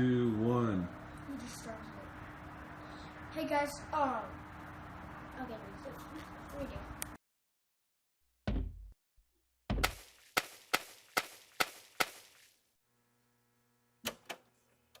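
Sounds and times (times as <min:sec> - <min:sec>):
faint steady hum: 0:00.0 - 0:07.2.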